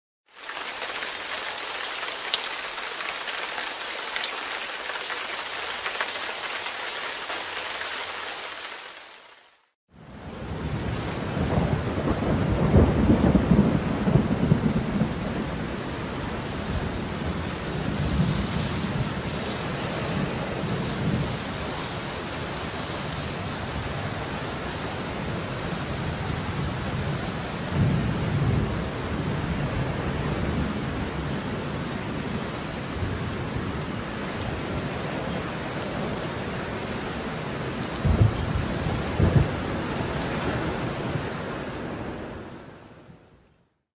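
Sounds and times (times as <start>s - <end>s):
rain falling: 0.3s - 43.0s
heavy rain: 0.3s - 43.3s
rolling thunder: 10.4s - 15.8s, 27.7s - 30.8s, 38.0s - 41.0s.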